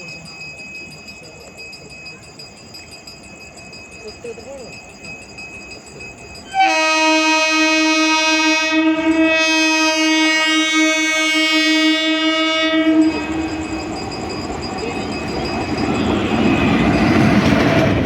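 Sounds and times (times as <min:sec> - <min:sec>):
train wheels rumbling on track: 0:00.0 - 0:18.0
locomotive horn blast: 0:06.5 - 0:13.5.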